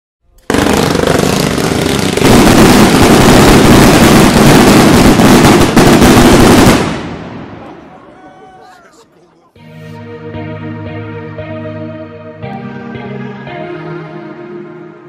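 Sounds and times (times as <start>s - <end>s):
firework bangs and crackle: 0.5s - 7.7s.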